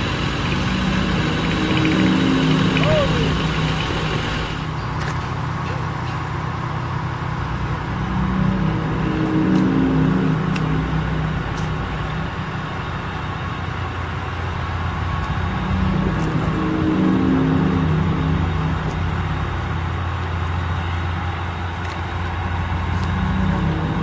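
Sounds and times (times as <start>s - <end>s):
large engine running and revving: 0.0s - 24.0s.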